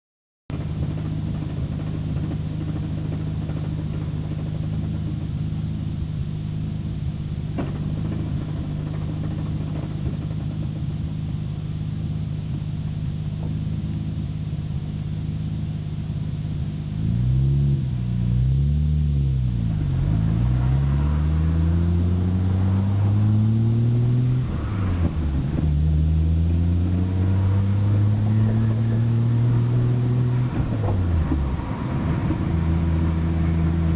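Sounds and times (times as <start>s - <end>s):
car engine idling and revving: 0.5s - 33.9s.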